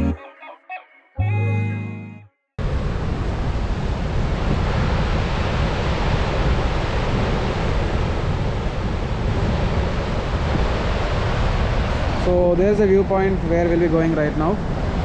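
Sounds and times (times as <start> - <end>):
wind buffeting microphone: 2.6 - 15.0.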